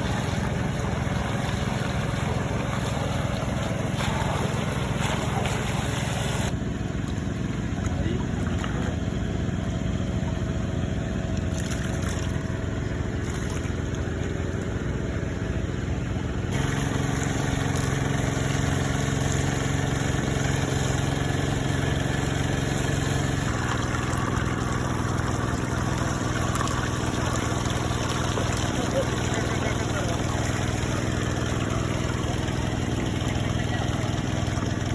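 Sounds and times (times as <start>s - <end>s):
water running: 0.0s - 6.5s, 16.5s - 34.9s
small engine running: 0.0s - 34.9s.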